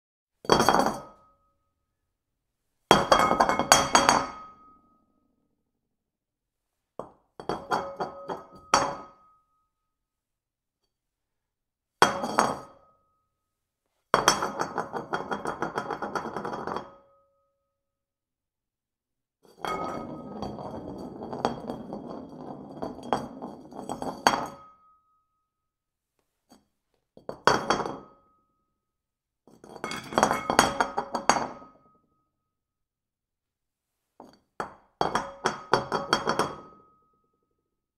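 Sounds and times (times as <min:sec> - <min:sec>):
porcelain bowl clattering on hard surface: 0:00.5 - 0:01.1, 0:02.9 - 0:04.6, 0:07.4 - 0:09.2, 0:12.1 - 0:12.7, 0:14.2 - 0:17.0, 0:19.6 - 0:24.7, 0:27.2 - 0:28.1, 0:29.6 - 0:31.8, 0:34.3 - 0:36.9.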